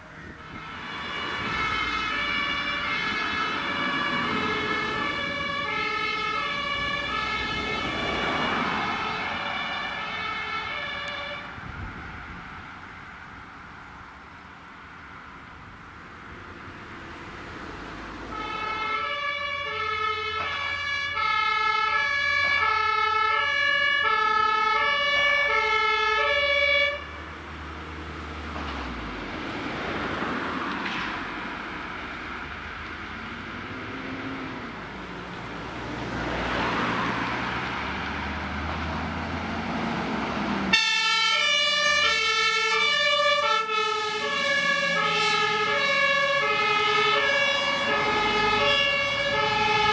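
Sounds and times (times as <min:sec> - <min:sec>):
fire engine two-tone siren: 0:00.0 - 0:12.4, 0:18.2 - 0:27.4, 0:35.4 - 0:49.9
truck engine and tyres passing: 0:00.0 - 0:49.9.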